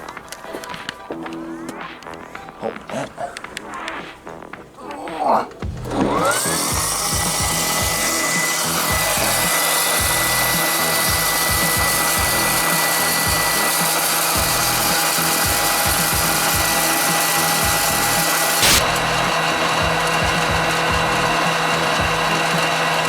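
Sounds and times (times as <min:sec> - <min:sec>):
popcorn popper fan motor whine: 0:05.6 - 0:23.0.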